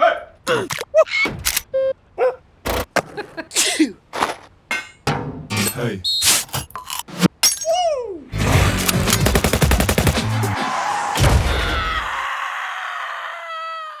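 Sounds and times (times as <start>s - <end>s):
machine-gun-like fire: 8.5s - 10.4s.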